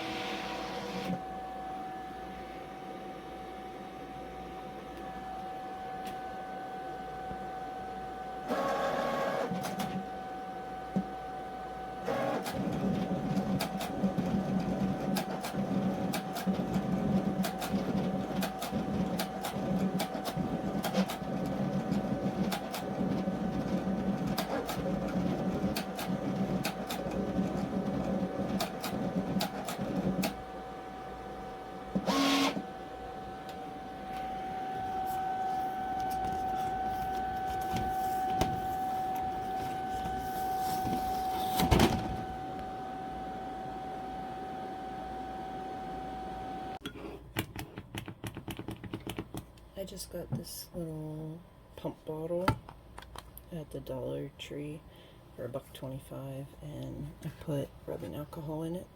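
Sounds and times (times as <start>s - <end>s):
steady machine hum: 0.0s - 46.8s.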